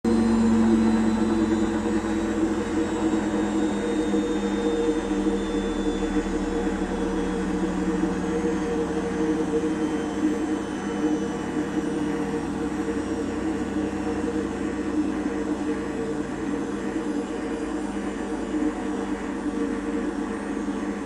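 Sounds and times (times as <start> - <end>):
washing machine drum droning: 0.0 - 21.0.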